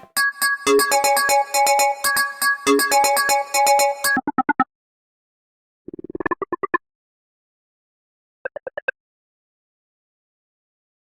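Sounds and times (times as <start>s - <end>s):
electronic synth ringtone melody: 0.0s - 4.3s.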